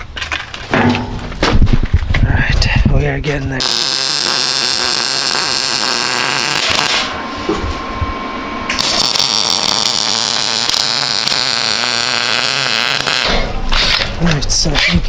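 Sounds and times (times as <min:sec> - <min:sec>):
power tool whining on metal: 0:03.6 - 0:07.5, 0:08.7 - 0:14.1.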